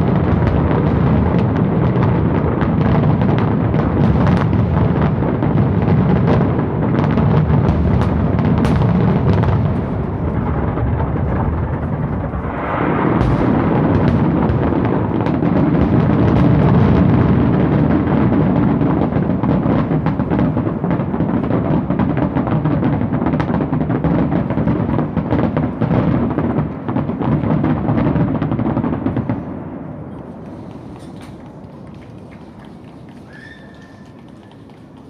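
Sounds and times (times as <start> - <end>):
fireworks crackling and banging: 0.0 - 35.0
deep rumble: 9.1 - 16.5.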